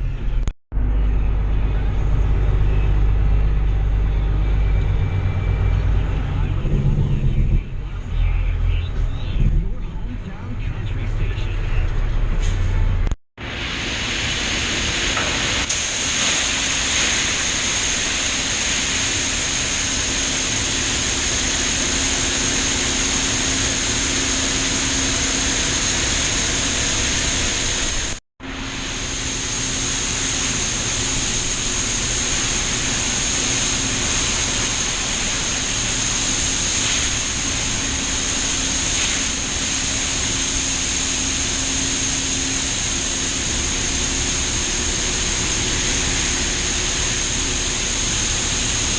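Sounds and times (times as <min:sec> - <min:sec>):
low hum: 0:00.0 - 0:13.2
high whine: 0:00.0 - 0:48.9
tractor engine running: 0:00.0 - 0:48.9
broad rushing noise: 0:05.3 - 0:48.9.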